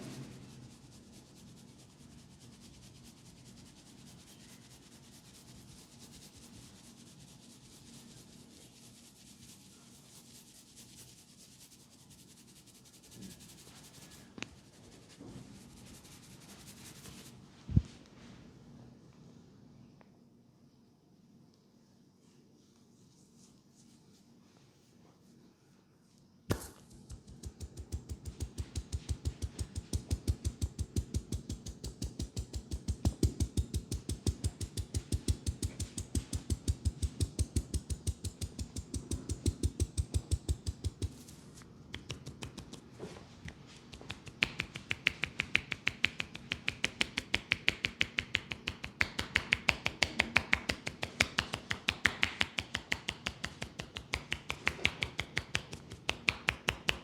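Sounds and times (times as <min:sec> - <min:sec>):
hands tapping and chopping: 0:26.5 - 0:41.2, 0:43.9 - 0:57.0
hand slaps and claps: 0:26.5 - 0:41.3, 0:41.9 - 0:42.9, 0:43.5 - 0:57.0.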